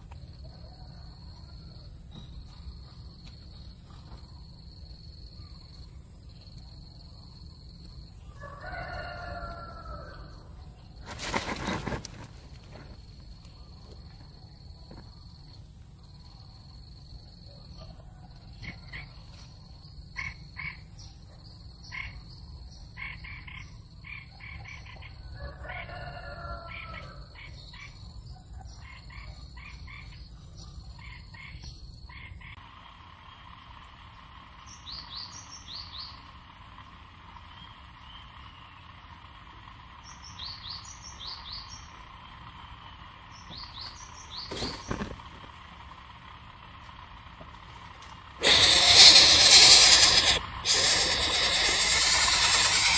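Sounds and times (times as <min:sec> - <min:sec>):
high insect whine: 0:48.4 - 0:52.9
small animals chirping: 0:48.4 - 0:52.9.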